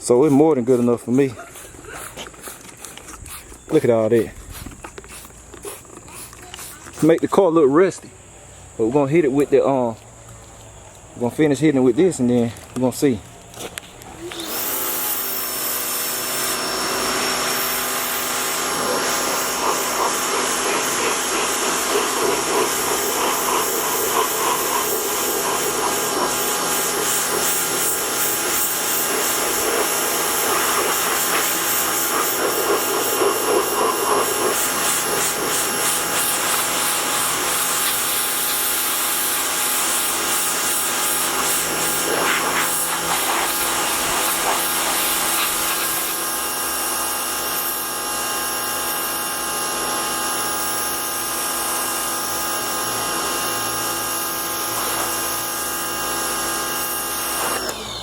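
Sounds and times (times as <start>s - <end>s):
water jet spraying: 0.0s - 7.2s, 14.2s - 46.5s, 54.4s - 55.5s
pressure washer motor and pump whining: 10.9s - 58.0s.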